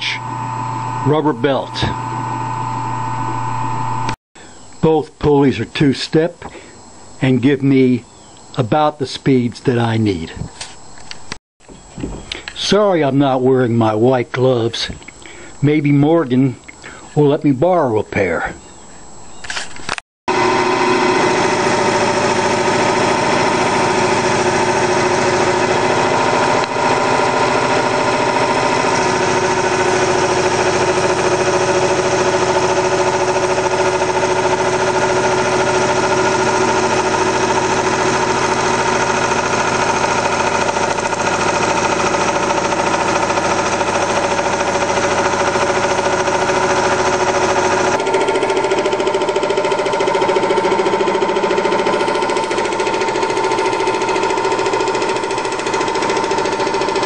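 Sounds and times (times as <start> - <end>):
wood lathe running: 0.0 - 4.2, 20.3 - 57.0.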